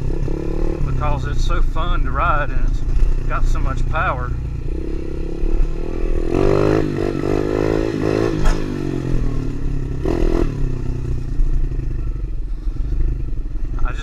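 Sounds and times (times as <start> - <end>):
motorbike engine revving: 0.0 - 14.0
sharp clack: 8.3 - 8.8.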